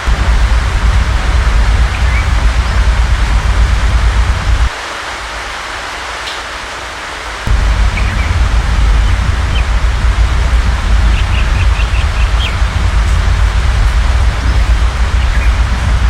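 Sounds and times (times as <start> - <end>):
low rumble: 0.0 - 4.8, 7.5 - 16.0
steady rain hiss: 0.0 - 16.0
small birds chirping: 7.6 - 16.0.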